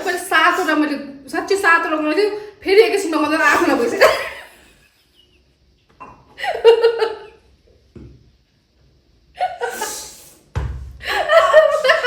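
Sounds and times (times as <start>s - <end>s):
woman laughing: 3.5s - 4.7s, 6.4s - 7.4s, 9.4s - 10.1s, 11.0s - 12.0s.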